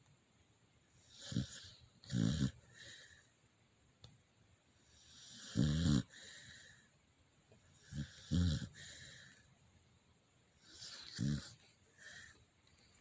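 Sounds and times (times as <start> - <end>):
pet snoring: 1.0 - 2.9, 4.9 - 6.3, 7.8 - 9.0, 10.6 - 11.6
soft breathing: 2.6 - 3.5, 6.0 - 9.6, 10.6 - 13.0.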